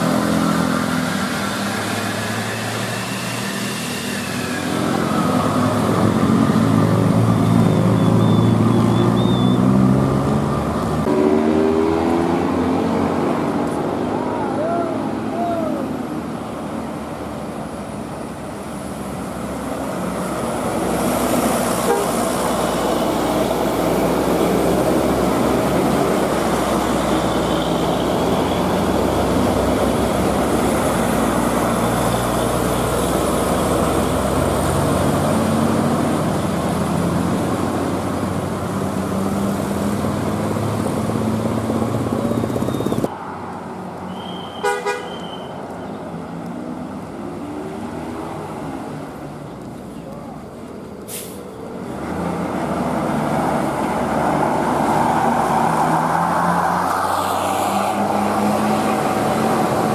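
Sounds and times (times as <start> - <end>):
bus engine and road noise: 0.0 - 59.9
bus musical horn: 21.8 - 22.3, 44.2 - 45.6
short horn beep: 44.1 - 45.6.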